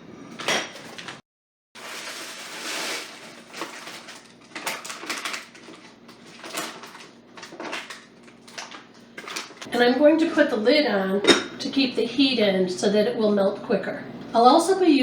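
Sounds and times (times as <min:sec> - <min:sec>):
wax pellets rattling pour: 0:01.8 - 0:04.7
pellets clicking and settling: 0:01.8 - 0:09.7.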